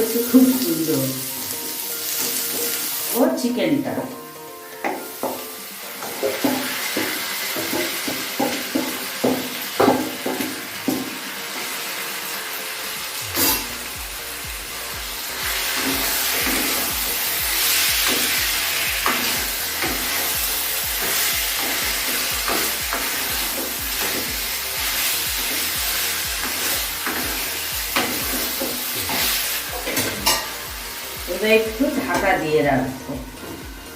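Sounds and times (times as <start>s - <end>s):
chicken sizzling in oil: 0.0s - 3.9s, 4.7s - 33.9s
spatula knocking and scraping pan: 4.8s - 11.2s, 17.6s - 25.8s, 26.4s - 30.6s.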